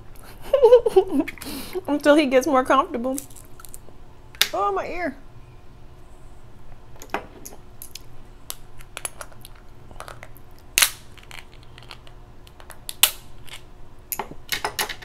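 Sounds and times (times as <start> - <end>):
crab shells cracking: 3.2 - 3.8, 7.8 - 14.2.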